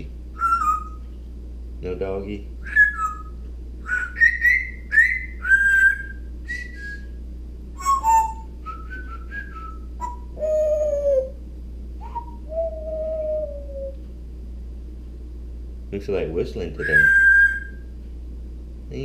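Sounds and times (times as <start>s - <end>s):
parrot whistling and chirping: 0.4s - 1.0s, 2.6s - 7.2s, 7.8s - 11.4s, 12.0s - 14.0s, 16.8s - 17.9s.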